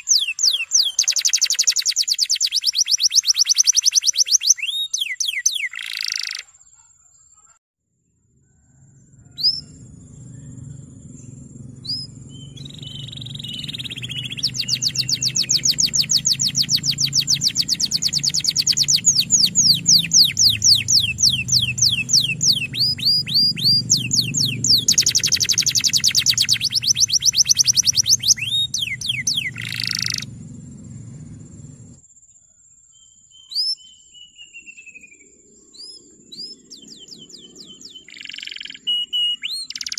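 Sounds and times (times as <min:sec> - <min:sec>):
canary singing trills: 0:00.0 - 0:07.6, 0:08.6 - 0:32.0, 0:33.0 - 0:39.9
low steady hum: 0:08.4 - 0:32.0.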